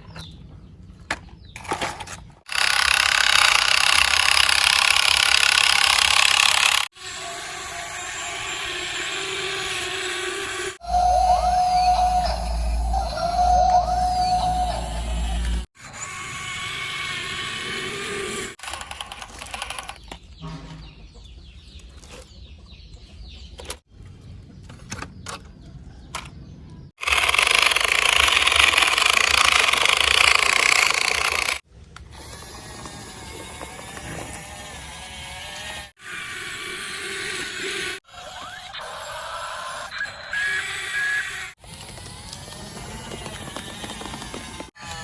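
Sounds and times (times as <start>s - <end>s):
small electric motors whirring: 2.4s - 20.2s, 27.0s - 45.0s.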